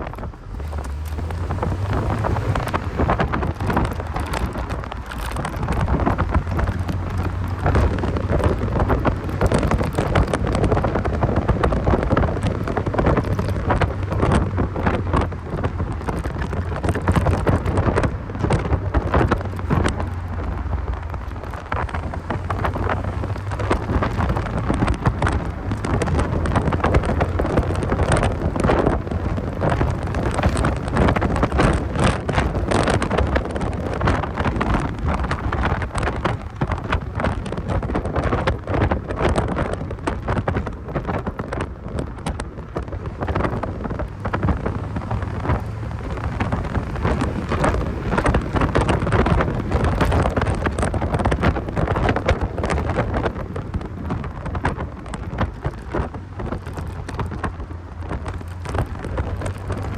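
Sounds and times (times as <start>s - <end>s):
car engine and road noise: 0.0s - 59.9s
crackling: 0.0s - 59.9s
wind buffeting microphone: 0.0s - 59.9s.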